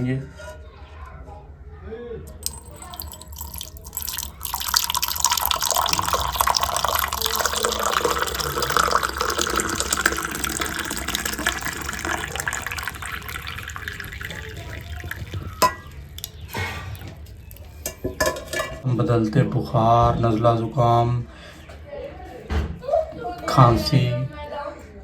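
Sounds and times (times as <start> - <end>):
tea pouring into a cup: 2.3 - 18.7.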